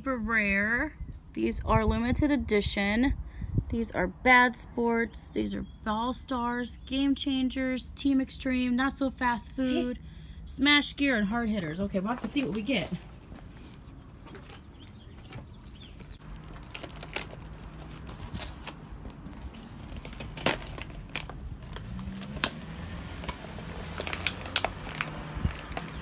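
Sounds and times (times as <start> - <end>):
plastic packaging clicks and crinkles: 16.0 - 26.0.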